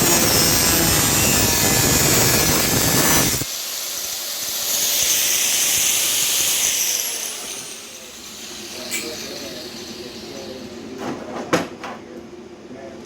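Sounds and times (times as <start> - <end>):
rushing hiss of workshop tool: 3.0 - 11.0.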